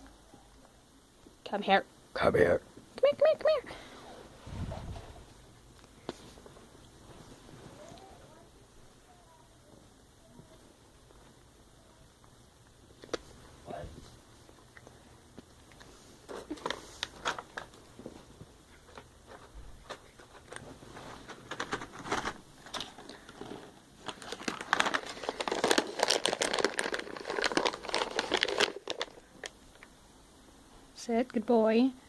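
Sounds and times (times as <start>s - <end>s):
packaging rustling and crackling: 16.2s - 29.9s.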